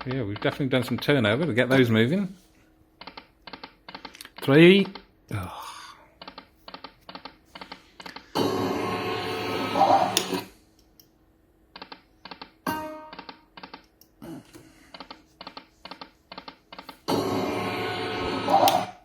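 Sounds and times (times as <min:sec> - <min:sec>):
slot reel spin sound: 0:08.4 - 0:10.5, 0:17.1 - 0:19.0.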